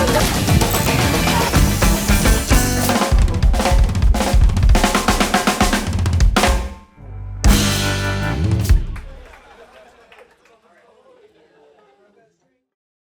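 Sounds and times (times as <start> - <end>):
drum kit playing busy beat: 0.0 - 6.9, 7.5 - 9.4
heavy bass line: 0.0 - 9.2.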